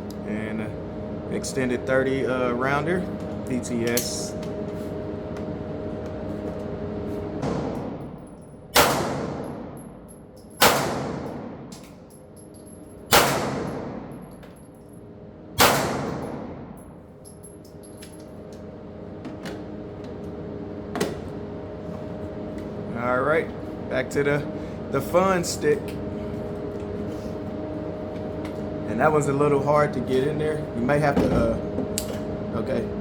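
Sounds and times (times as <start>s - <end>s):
pistol shots with echo: 8.7s - 9.7s, 10.6s - 11.6s, 13.1s - 14.2s, 15.6s - 16.7s.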